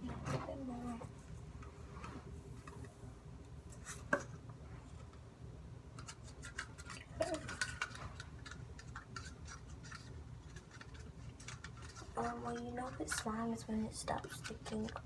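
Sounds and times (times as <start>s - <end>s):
utensil stirring slime: 6.0s - 15.0s.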